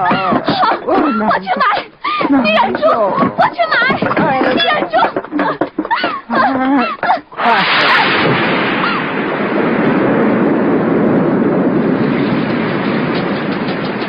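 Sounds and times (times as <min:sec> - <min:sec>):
heavy rain: 0:07.2 - 0:14.0
thunder crash: 0:07.4 - 0:14.0.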